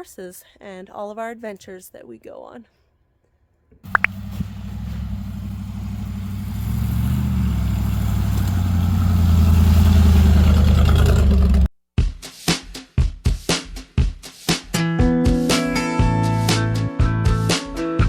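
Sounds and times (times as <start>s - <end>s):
jeep engine droning: 3.9s - 11.7s.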